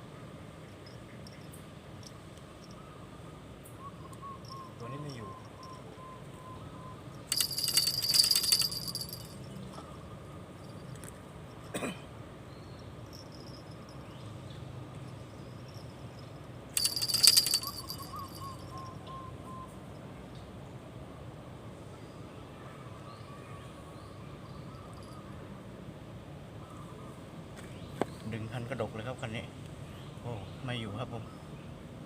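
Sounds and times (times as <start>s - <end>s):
fishing rod bells jingling: 4.4s - 6.0s, 7.1s - 9.9s, 10.6s - 11.8s, 12.8s - 14.2s, 15.0s - 19.0s.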